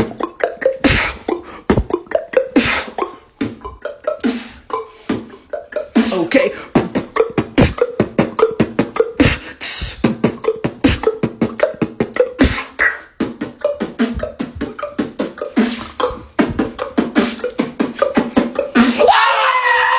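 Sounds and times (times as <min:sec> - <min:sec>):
beatboxing mouth clicks and pops: 0:00.0 - 0:19.1.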